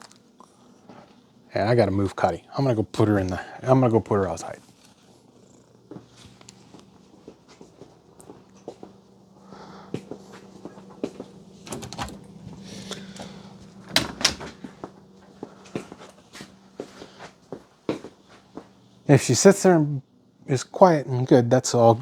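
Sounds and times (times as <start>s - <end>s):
steady low hum: 5.2s - 20.7s
door opening and closing: 11.6s - 14.8s
knocks and clicks of movement: 11.6s - 15.0s.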